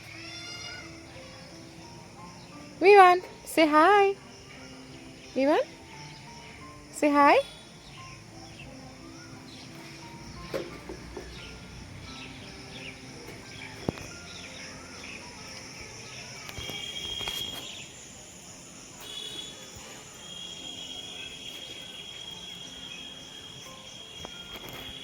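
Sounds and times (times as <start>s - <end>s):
birds chirping: 0.0s - 25.0s
high insect trill: 0.0s - 25.0s.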